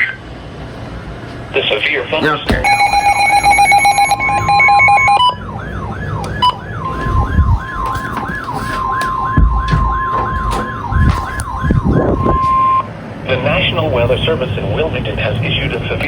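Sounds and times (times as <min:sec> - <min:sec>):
pulsed beeping tone: 0:02.6 - 0:05.4
steady single-pitch alert tone: 0:02.6 - 0:05.4
fast warbling siren: 0:02.6 - 0:12.9.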